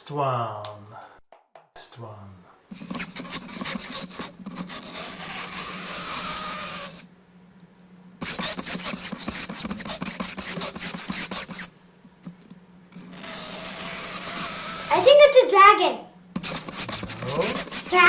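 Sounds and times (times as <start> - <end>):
fingernails scratching chalkboard: 2.7 - 7.1, 8.2 - 11.7, 16.4 - 18.0.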